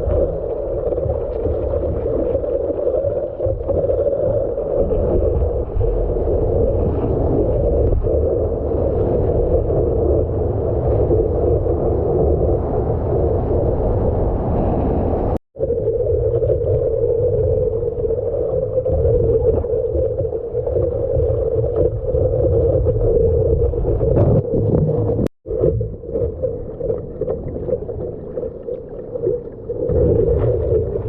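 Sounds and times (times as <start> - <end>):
rushing water: 0.0 - 14.1
low rumble: 0.0 - 31.0
wind buffeting microphone: 4.8 - 15.4.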